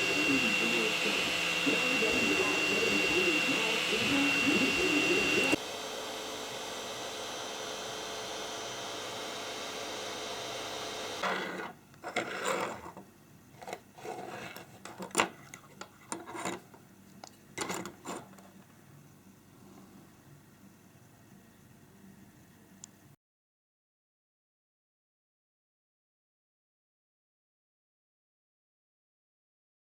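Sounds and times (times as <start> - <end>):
machine hum: 0.0 - 11.8
scraping and rubbing sounds: 11.2 - 16.8, 17.6 - 18.6.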